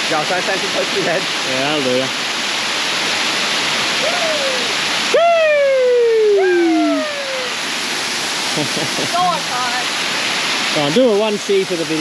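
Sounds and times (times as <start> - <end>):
waterfall rushing: 0.0 - 12.0
long falling wordless calls: 4.0 - 7.6.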